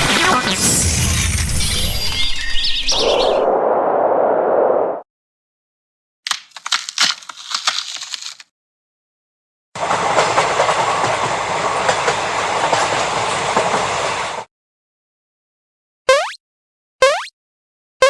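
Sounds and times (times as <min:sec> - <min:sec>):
train wheels clattering on rails: 0:09.8 - 0:14.5.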